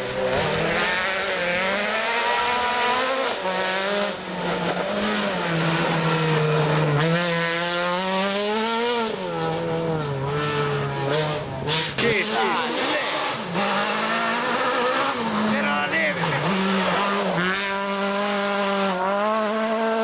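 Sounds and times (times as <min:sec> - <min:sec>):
rally car engine running hard: 0:00.0 - 0:20.0.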